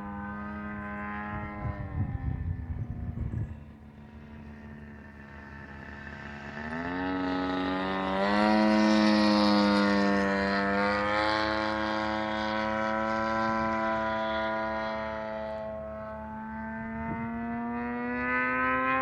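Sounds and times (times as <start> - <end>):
model airplane motor buzzing: 0.0 - 19.0.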